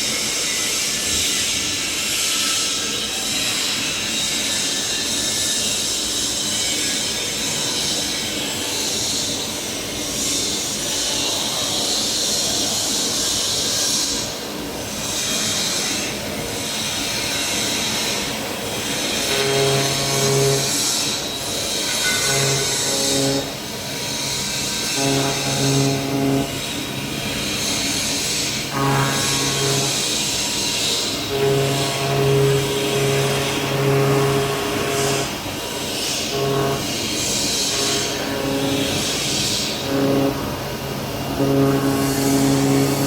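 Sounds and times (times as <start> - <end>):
cutting machine hissing: 15.0 - 43.0
short low humming tones: 19.0 - 21.0, 21.9 - 23.8, 24.9 - 27.5, 28.5 - 43.0.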